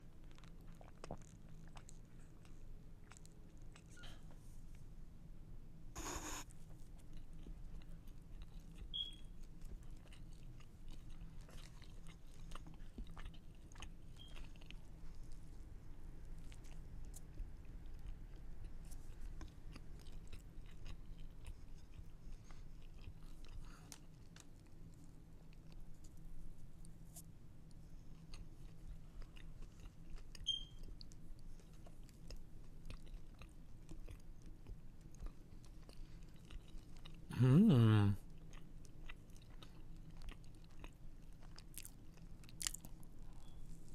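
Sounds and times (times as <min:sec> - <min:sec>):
chewing and biting food: 0:00.0 - 0:04.2, 0:06.0 - 0:26.2, 0:27.7 - 0:37.3, 0:38.2 - 0:43.9.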